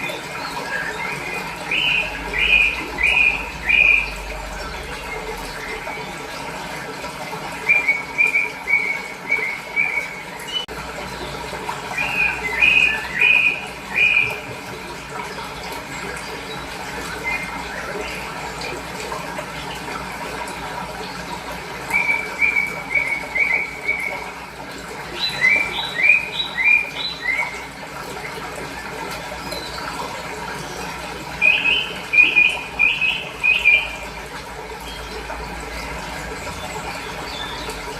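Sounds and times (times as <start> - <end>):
small birds chirping: 0.0 - 6.2, 7.6 - 14.6, 25.1 - 27.6, 31.3 - 34.2
running water rushing: 0.0 - 37.9.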